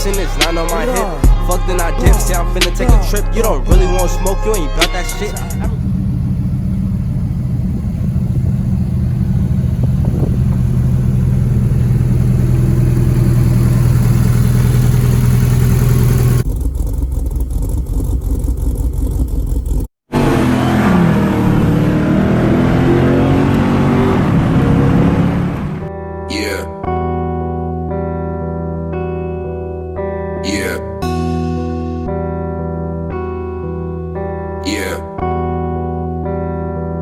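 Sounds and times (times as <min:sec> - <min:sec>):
car engine running: 0:00.0 - 0:25.9.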